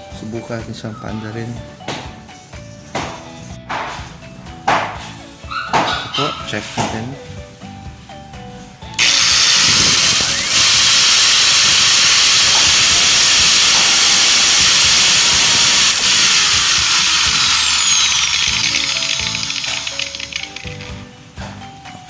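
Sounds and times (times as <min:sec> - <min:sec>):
angle grinder whining: 0:09.0 - 0:21.0.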